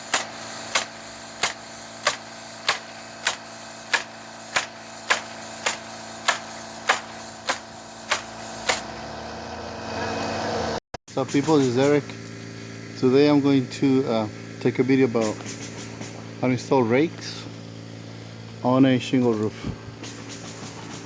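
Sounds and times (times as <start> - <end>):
hammer striking nails: 0.0 - 9.0.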